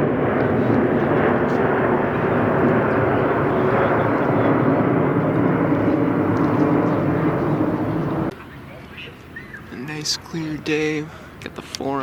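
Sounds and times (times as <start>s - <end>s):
rushing wind noise: 0.0s - 8.3s
aircraft engine drone: 0.0s - 11.8s.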